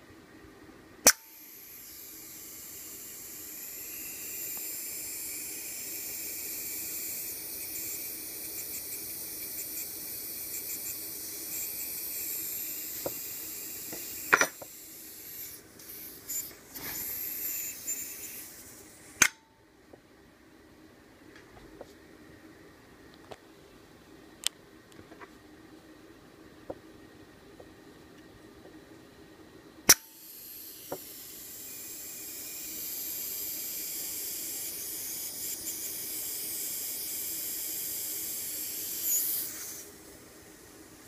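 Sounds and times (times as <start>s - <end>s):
sharp click: 1.0s - 1.4s, 19.2s - 19.5s, 29.9s - 30.1s
gas leaking hiss: 1.3s - 19.3s, 29.9s - 41.0s.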